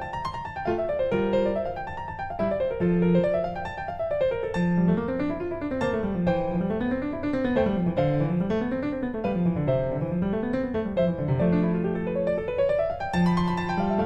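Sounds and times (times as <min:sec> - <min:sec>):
piano arpeggios: 0:00.0 - 0:14.0.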